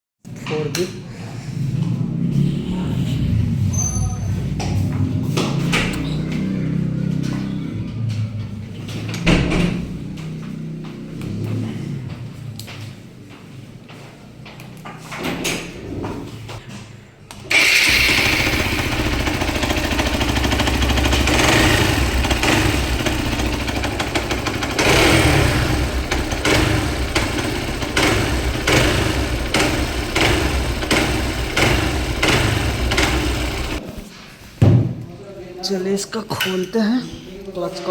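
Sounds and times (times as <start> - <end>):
motorcycle engine knocking: 17.5 - 33.8.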